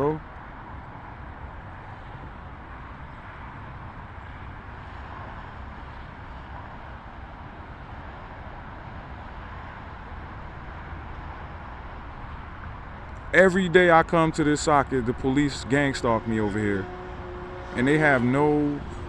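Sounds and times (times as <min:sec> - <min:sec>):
low rumble with hiss: 0:13.0 - 0:19.0.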